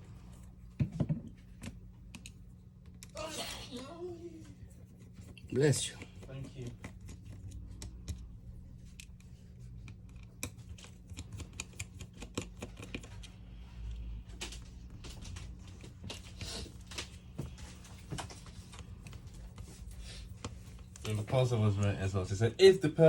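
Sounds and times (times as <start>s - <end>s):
steady low hum: 0.0s - 23.0s.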